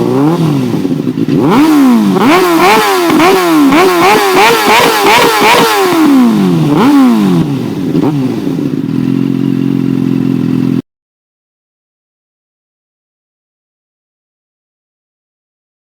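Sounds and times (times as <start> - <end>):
motorcycle engine revving and idling: 0.0 - 10.8.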